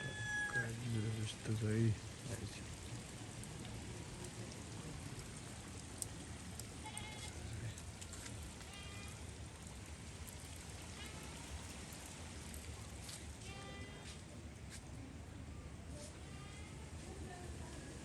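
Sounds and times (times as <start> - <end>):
animal bleats: 6.8 - 7.5.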